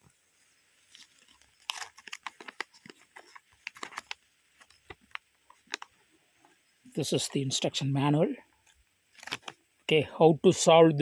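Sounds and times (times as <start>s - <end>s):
paper crinkling and rustling: 0.8s - 6.0s, 9.1s - 9.6s.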